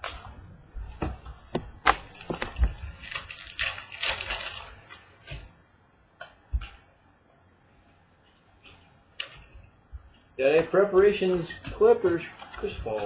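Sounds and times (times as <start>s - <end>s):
foil wrappers crinkling: 1.9s - 5.5s.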